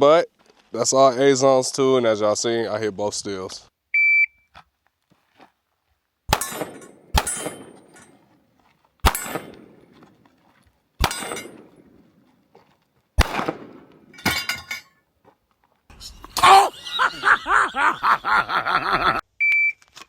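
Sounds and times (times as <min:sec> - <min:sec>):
pistol shots with ringing tail: 0:06.3 - 0:08.2, 0:09.0 - 0:10.0, 0:11.0 - 0:12.0, 0:13.2 - 0:14.4.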